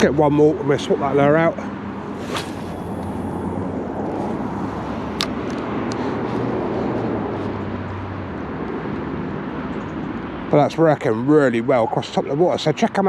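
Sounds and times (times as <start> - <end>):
outdoor noise: 0.0 - 12.9.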